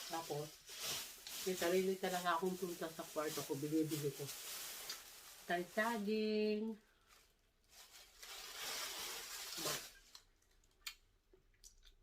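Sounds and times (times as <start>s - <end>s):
banana peel tearing rustle: 7.8s - 10.3s.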